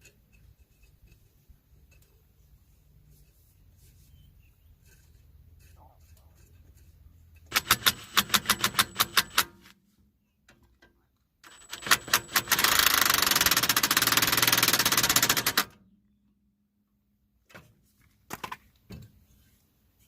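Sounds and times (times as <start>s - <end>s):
rapid mechanical clicking: 7.4s - 9.6s, 11.4s - 15.8s.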